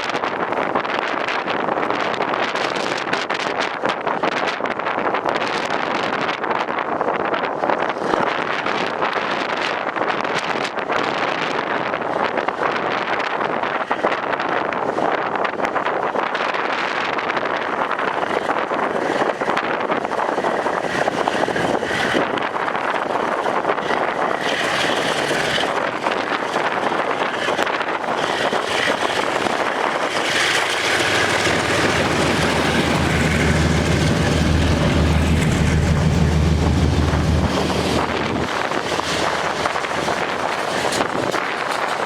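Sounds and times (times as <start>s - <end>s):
wind buffeting microphone: 17.3s - 42.0s
diesel locomotive engine drone: 20.0s - 42.0s.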